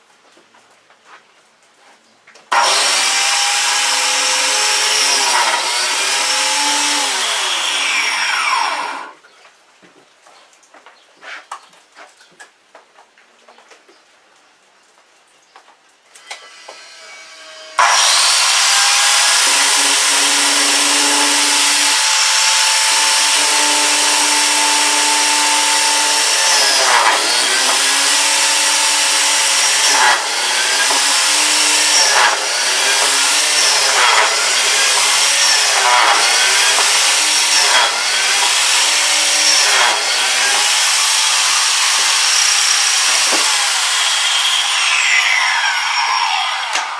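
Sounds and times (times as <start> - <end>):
power tool cutting wood: 2.5 - 9.2, 16.2 - 46.9.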